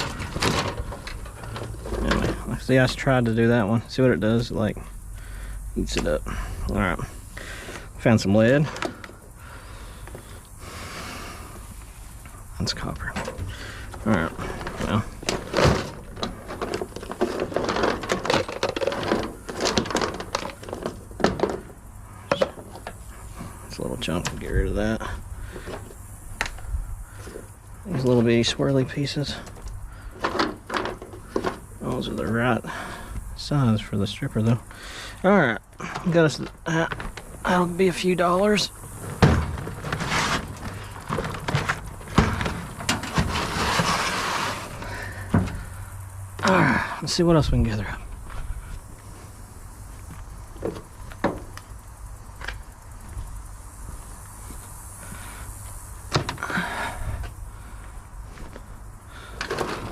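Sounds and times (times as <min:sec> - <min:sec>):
metal clanks and knocks: 0:00.0 - 0:03.6, 0:12.8 - 0:26.6, 0:30.2 - 0:32.9, 0:39.0 - 0:46.7
scrap metal clinking and rattling: 0:00.0 - 0:05.3, 0:12.2 - 0:33.1, 0:35.7 - 0:48.4, 0:58.3 - 0:59.9.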